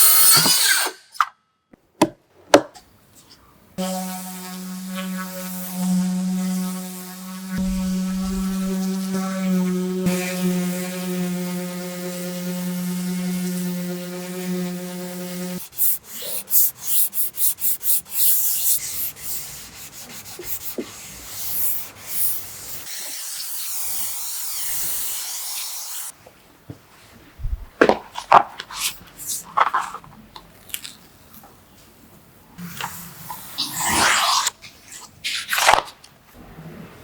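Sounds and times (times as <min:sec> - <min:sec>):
hand sanding strokes: 0:03.8 - 0:26.1
machine hum: 0:07.6 - 0:10.0.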